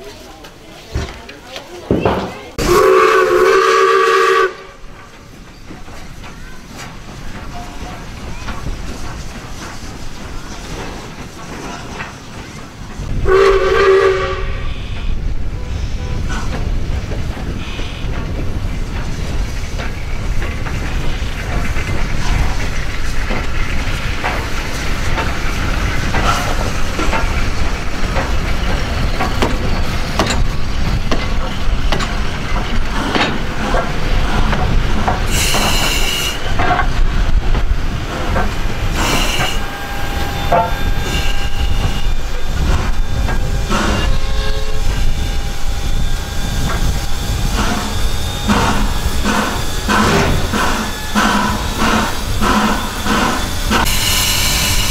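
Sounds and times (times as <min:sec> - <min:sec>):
train rumbling on rails: 0:00.0 - 0:54.9
high squeal: 0:38.9 - 0:54.9.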